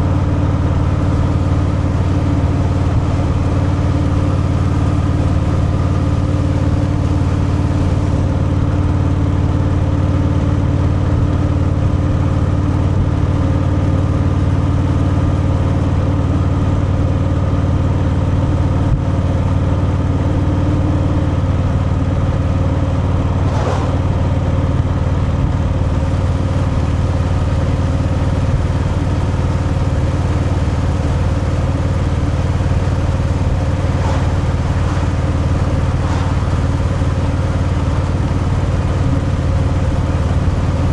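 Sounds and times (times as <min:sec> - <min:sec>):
motorcycle engine running: 0:00.0 - 0:40.9
brief rushing noise: 0:23.2 - 0:24.9, 0:33.6 - 0:37.0.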